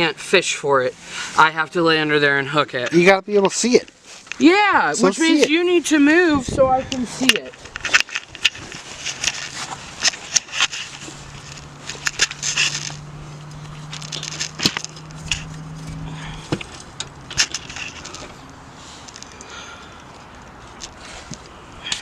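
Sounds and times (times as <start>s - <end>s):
scuffing and crunching on ground: 6.9s - 19.4s
metal rods clicking and scraping: 7.2s - 22.0s.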